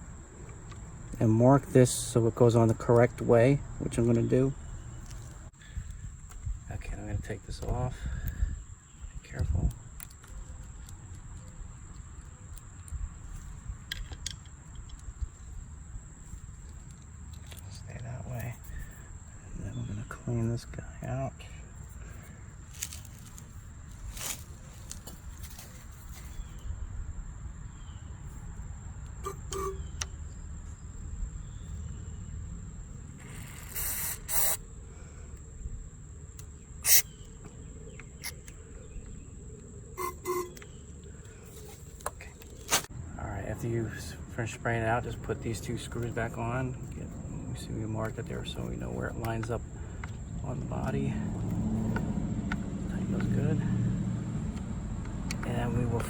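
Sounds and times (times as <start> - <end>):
small handling clicks: 9.6 - 15.4
high thin tone: 29.2 - 30.0, 40.0 - 40.6
aerosol spray hissing: 33.5 - 34.6, 36.8 - 37.1
low handling rumble: 37.2 - 56.0.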